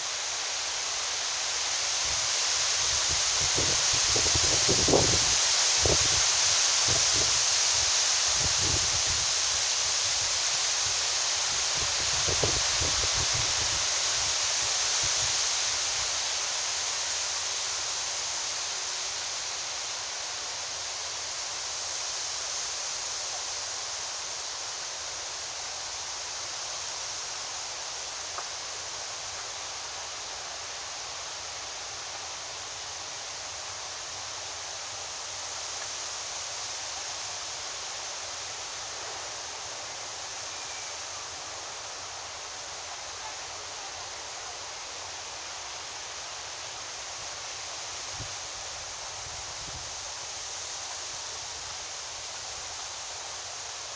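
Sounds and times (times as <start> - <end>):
wind rustling tree leaves: 0.0 - 53.9.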